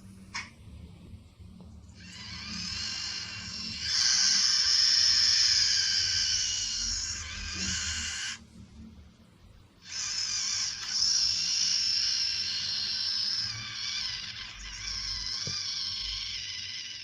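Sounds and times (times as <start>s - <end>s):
salamander hissing: 2.0s - 8.4s, 9.8s - 17.0s.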